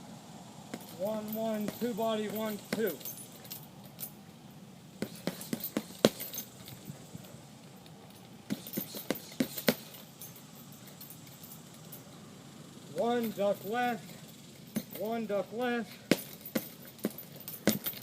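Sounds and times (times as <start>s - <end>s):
boxing gloves punching heavy bag: 0.7s - 3.2s, 5.0s - 6.5s, 8.5s - 10.0s, 16.1s - 18.0s.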